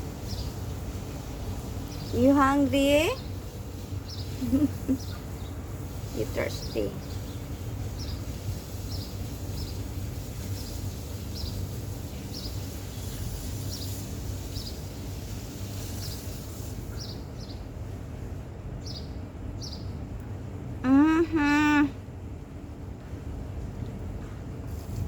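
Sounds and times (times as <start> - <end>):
low background hum: 0.0 - 25.0
bird chirping: 1.8 - 5.6.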